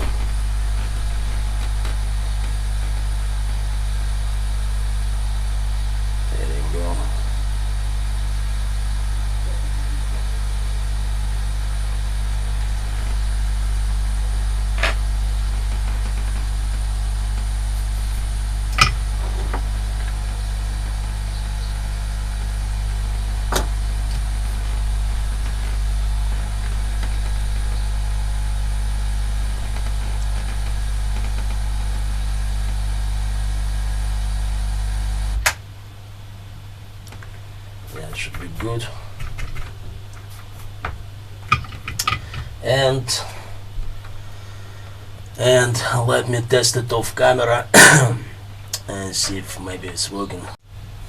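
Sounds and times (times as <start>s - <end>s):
electrical hum of equipment: 0.0s - 51.0s.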